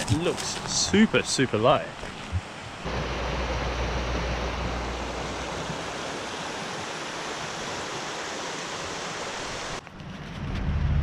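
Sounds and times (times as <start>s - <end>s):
creek water rushing over rocks: 1.0s - 9.8s
low rumble: 10.1s - 11.0s.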